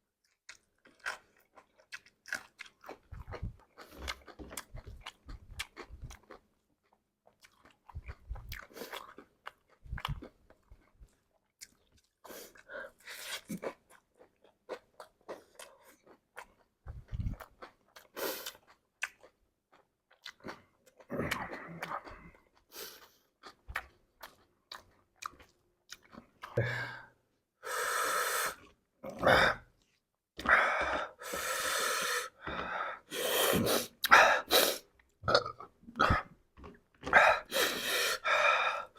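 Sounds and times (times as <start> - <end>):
crunchy chewing: 0.2 - 26.6.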